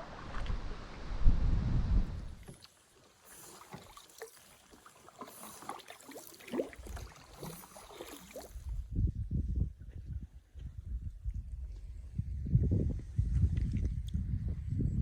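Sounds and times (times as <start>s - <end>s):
wind rumble on microphone: 0.0s - 2.6s, 8.5s - 15.0s
water lapping and dripping: 2.4s - 8.8s.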